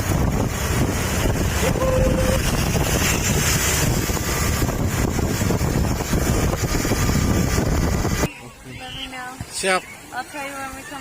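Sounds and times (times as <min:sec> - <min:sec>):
wind buffeting microphone: 0:00.0 - 0:08.3.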